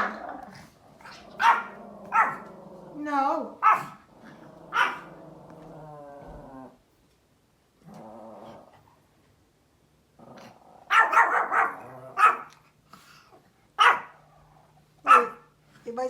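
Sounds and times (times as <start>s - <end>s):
small dog growling: 0.0s - 6.8s, 7.8s - 9.0s, 10.2s - 13.3s
small dog barking: 1.4s - 2.5s, 3.6s - 4.0s, 4.7s - 5.1s, 10.9s - 12.6s, 13.8s - 14.2s, 15.0s - 15.5s.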